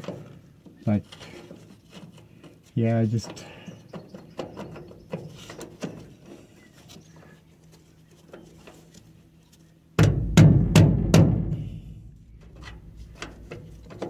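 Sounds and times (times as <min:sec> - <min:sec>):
heavy knocks: 0:10.0 - 0:14.0.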